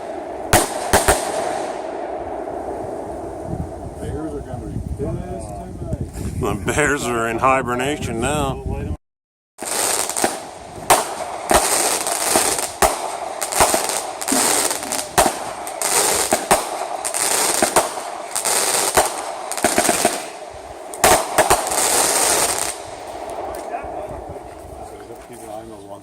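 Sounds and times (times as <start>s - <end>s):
fireworks bangs: 0.0s - 4.0s, 9.6s - 25.2s
fireworks crackling hiss: 9.6s - 23.8s.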